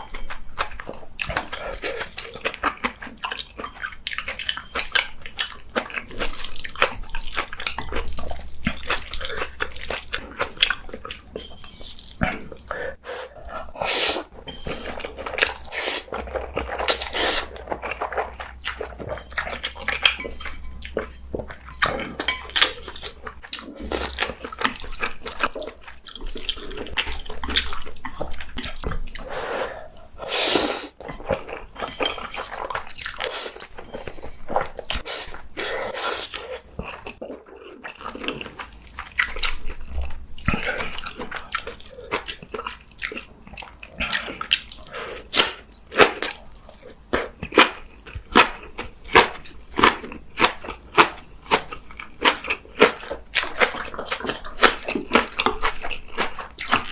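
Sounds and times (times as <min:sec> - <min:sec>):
wet chewing: 0:00.0 - 0:56.9
noodle slurping: 0:08.4 - 0:27.0, 0:29.2 - 0:36.6.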